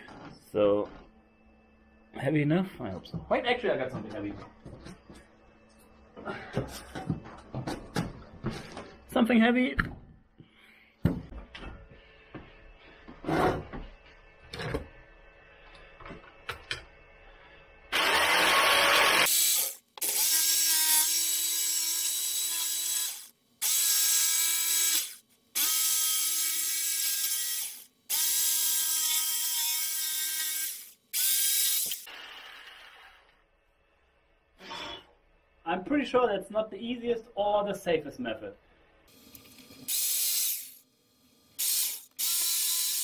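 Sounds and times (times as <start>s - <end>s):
jigsaw cutting: 17.9s - 33.2s, 41.6s - 43.0s.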